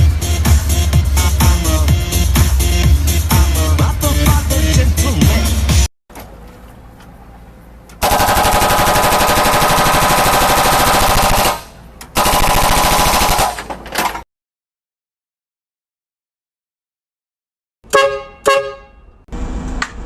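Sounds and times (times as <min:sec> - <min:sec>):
loud rapid rattling: 0:08.0 - 0:13.7.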